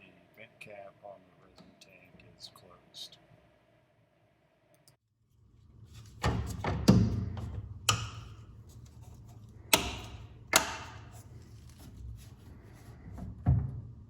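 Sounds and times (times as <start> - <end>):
sharp clicks and knocks: 6.2 - 11.3.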